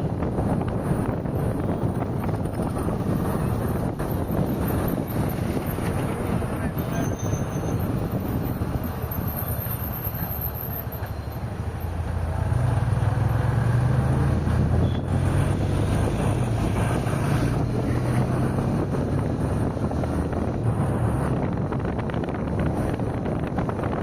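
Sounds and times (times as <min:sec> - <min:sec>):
car road noise: 0:00.0 - 0:24.0
wind: 0:00.0 - 0:24.0.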